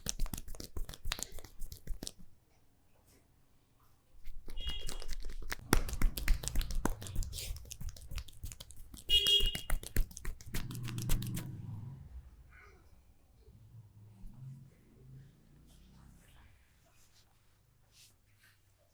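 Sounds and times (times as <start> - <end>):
hands rubbing hair: 0.0 - 2.3, 4.2 - 11.5.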